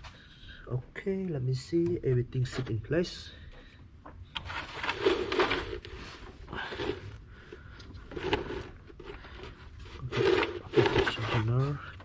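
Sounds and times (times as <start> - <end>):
rubber belt scraping on pulleys: 4.6 - 7.1, 9.9 - 11.8.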